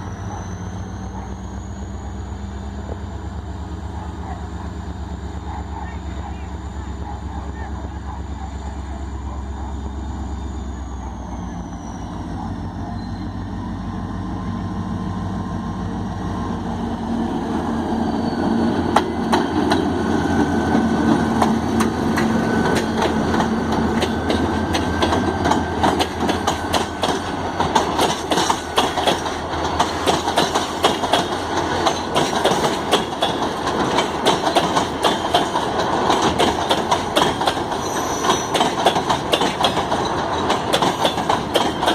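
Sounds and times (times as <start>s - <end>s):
diesel locomotive passing: 0.0s - 41.9s
train wheels clattering over rail joints: 18.8s - 41.9s.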